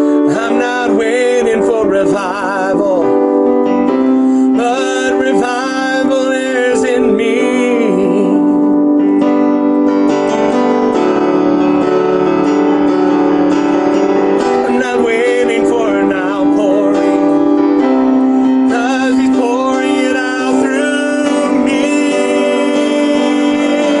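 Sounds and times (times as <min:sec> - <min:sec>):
man singing: 0:00.0 - 0:08.9, 0:14.4 - 0:24.0
piano chords on keyboard: 0:00.0 - 0:24.0.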